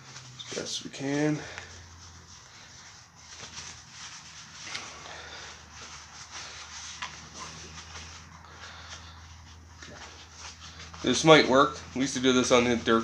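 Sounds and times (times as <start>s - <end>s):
hand rubbing metal tube: 0.0s - 13.0s.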